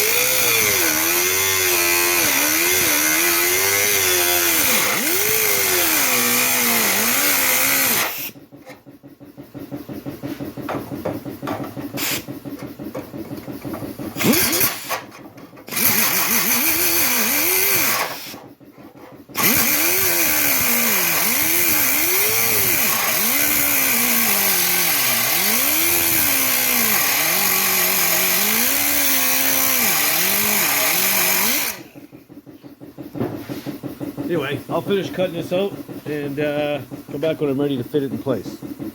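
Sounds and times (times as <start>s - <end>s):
power tool cutting sheet steel: 0.0s - 8.4s, 11.9s - 12.3s, 14.2s - 18.5s, 19.3s - 32.1s.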